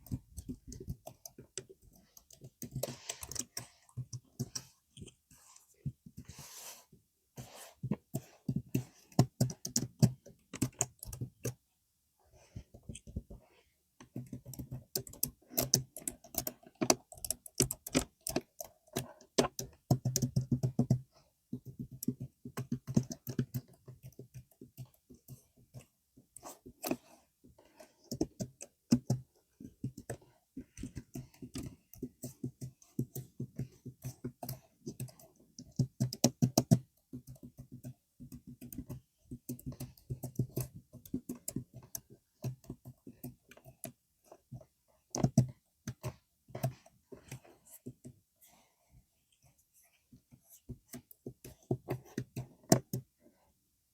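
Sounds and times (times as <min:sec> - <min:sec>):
typing on computer keyboard: 0:00.0 - 0:05.1, 0:08.1 - 0:11.6, 0:14.0 - 0:27.2, 0:27.8 - 0:44.0.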